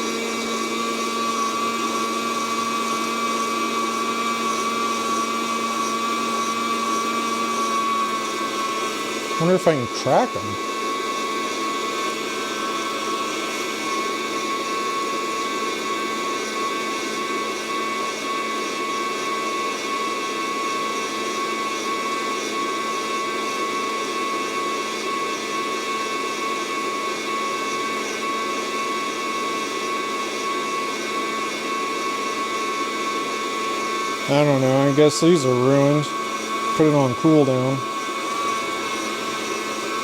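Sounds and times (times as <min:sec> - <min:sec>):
coffee roaster fan blowing: 0:00.0 - 0:40.0
constant whine: 0:34.2 - 0:38.8.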